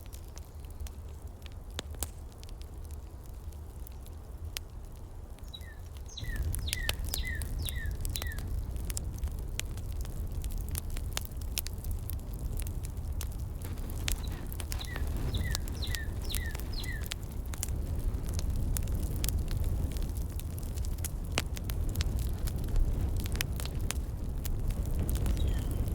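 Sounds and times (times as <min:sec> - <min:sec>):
heater crackles: 0:00.0 - 0:25.9
bird chirping: 0:05.5 - 0:08.4, 0:14.1 - 0:17.1, 0:25.3 - 0:25.9
low steady rumble: 0:06.2 - 0:25.9.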